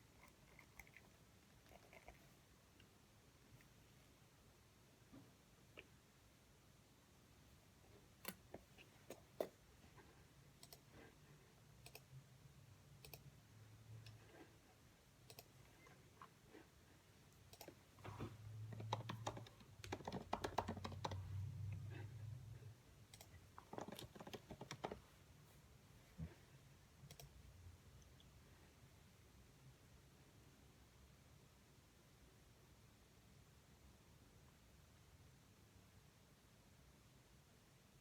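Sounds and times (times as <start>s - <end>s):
typing on computer keyboard: 11.8s - 12.1s, 18.7s - 21.5s, 23.1s - 25.0s.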